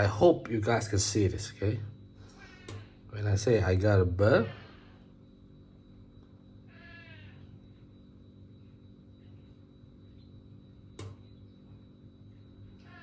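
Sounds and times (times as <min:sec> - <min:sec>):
low electrical hum: 0:00.0 - 0:13.0
cat meow: 0:06.7 - 0:07.4
sharp click: 0:11.0 - 0:11.2.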